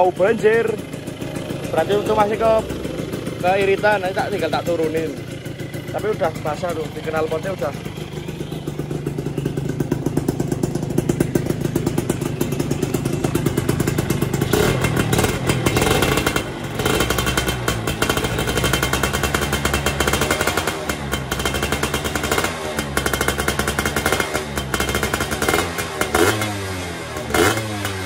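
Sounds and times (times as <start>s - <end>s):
two-stroke engine revving: 0.0s - 28.0s.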